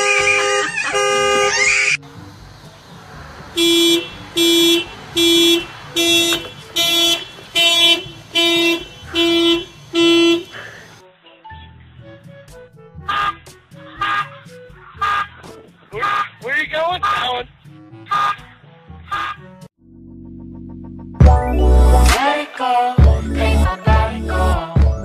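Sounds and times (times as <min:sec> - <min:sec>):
car horn blasts: 0:00.0 - 0:01.9, 0:03.5 - 0:10.8, 0:17.0 - 0:17.4
blaring car alarm tone: 0:00.0 - 0:02.0, 0:03.6 - 0:11.0, 0:18.0 - 0:18.5.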